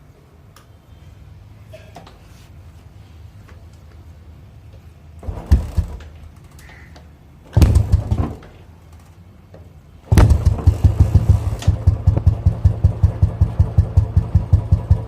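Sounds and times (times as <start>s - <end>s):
motorcycle engine starting and idling: 7.5s - 9.2s, 10.0s - 15.0s.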